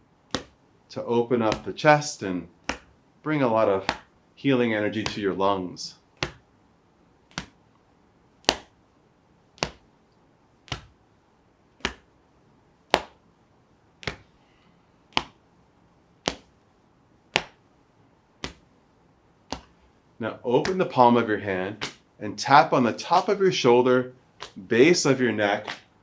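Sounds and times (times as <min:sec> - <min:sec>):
fist tapping on chest: 0:00.3 - 0:00.6, 0:01.5 - 0:01.8, 0:02.6 - 0:03.0, 0:03.8 - 0:04.1, 0:05.0 - 0:05.3, 0:06.2 - 0:06.5, 0:07.3 - 0:07.6, 0:08.4 - 0:08.8, 0:09.6 - 0:09.9, 0:10.7 - 0:11.0, 0:11.8 - 0:12.2, 0:12.9 - 0:13.2, 0:14.0 - 0:14.3, 0:15.1 - 0:15.4, 0:16.2 - 0:16.5, 0:17.3 - 0:17.6, 0:18.4 - 0:18.7, 0:19.5 - 0:19.8, 0:20.6 - 0:20.9, 0:21.8 - 0:22.0, 0:24.4 - 0:24.6, 0:25.6 - 0:25.9.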